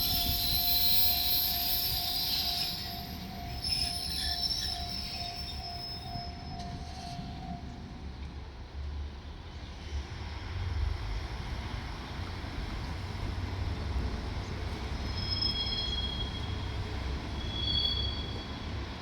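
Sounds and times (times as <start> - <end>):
high-pitched wheel squeals: 0.0 - 7.7, 15.0 - 18.7
diesel railcars rumbling past: 0.0 - 19.0.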